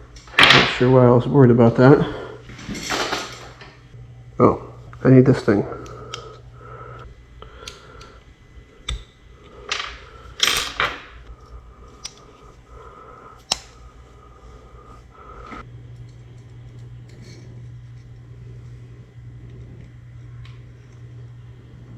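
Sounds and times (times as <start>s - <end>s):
metal parts clicking and tapping: 9.7s - 11.2s.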